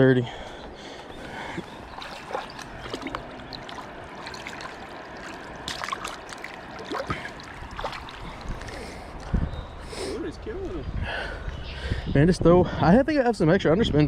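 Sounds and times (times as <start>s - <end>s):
creek water trickling: 0.4s - 9.8s
water splashes: 1.2s - 9.2s.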